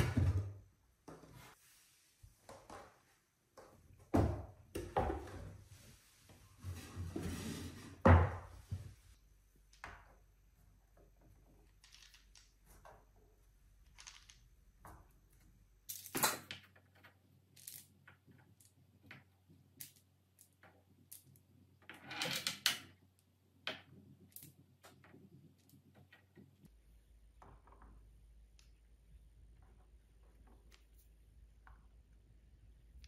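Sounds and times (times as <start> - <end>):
balls clattering: 9.6 - 33.0
balls rolling on wooden track: 9.7 - 15.6, 16.2 - 32.8.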